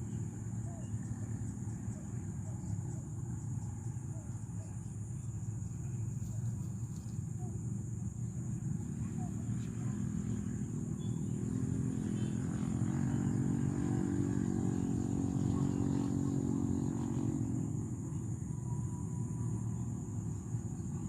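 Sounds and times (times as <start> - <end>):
vehicle engine passing by: 8.5 - 21.0.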